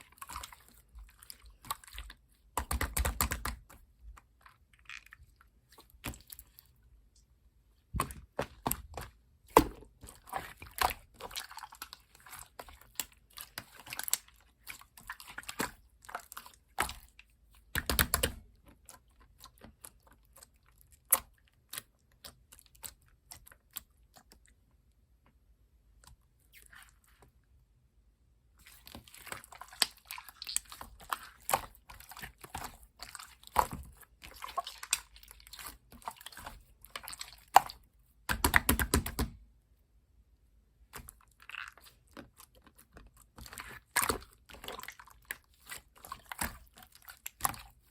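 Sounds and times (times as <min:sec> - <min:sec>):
slime squishing and popping: 0:01.5 - 0:03.7, 0:17.7 - 0:18.5, 0:28.7 - 0:39.4, 0:41.0 - 0:47.9.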